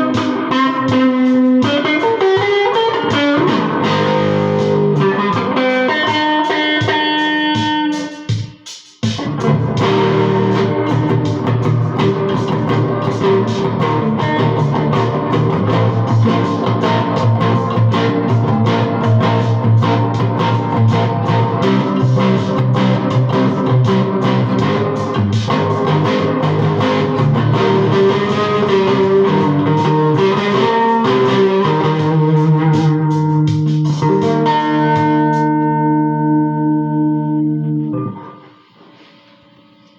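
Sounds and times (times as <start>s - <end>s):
overdriven electric guitar: 0.0s - 39.9s
low bass notes: 9.2s - 38.2s.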